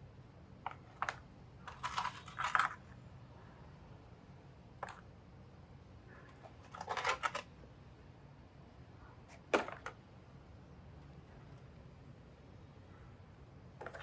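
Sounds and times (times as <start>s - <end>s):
plastic toy vehicles clicking: 0.6s - 2.9s, 6.3s - 7.5s, 13.8s - 14.0s.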